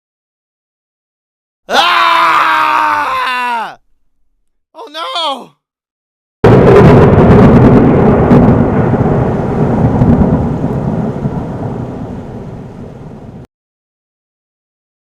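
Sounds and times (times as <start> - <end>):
thunder-like rumbling crash: 6.4 - 13.5.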